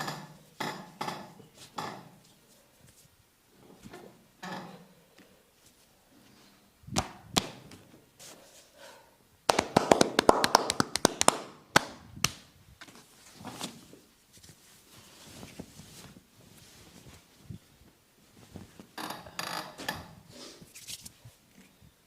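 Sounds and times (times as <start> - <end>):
hands slapping during massage: 7.0 - 7.9, 9.5 - 12.5.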